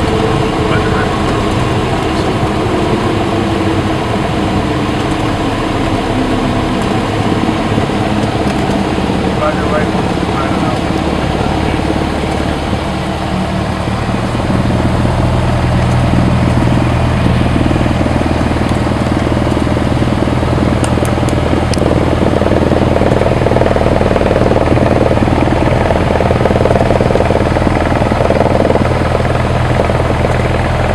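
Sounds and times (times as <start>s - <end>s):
light aircraft engine running: 0.0s - 30.9s.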